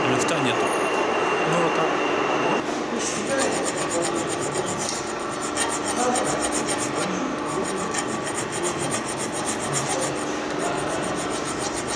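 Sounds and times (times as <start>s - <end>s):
rasping rubbing noise: 3.2s - 11.9s.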